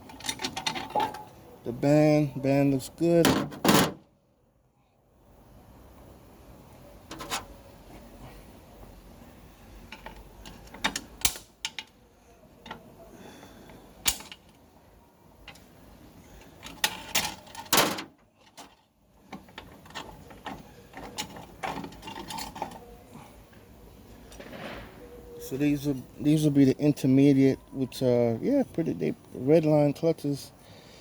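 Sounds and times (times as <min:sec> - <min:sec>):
metal parts clinking and clanking: 0:00.0 - 0:01.4, 0:16.4 - 0:22.9.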